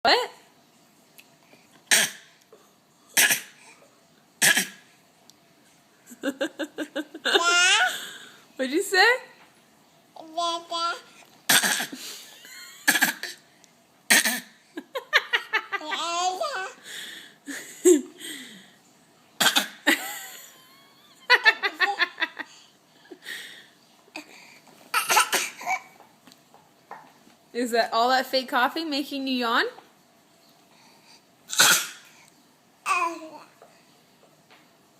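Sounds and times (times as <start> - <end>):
baby fake coughing: 1.9 - 2.3, 3.2 - 3.6, 4.4 - 4.9, 11.5 - 12.0, 12.8 - 13.4, 14.1 - 14.6, 19.4 - 19.9, 24.9 - 25.9, 31.5 - 32.1
baby giggling: 6.3 - 8.0
baby laughing: 6.4 - 8.0, 15.1 - 16.7, 24.9 - 26.0.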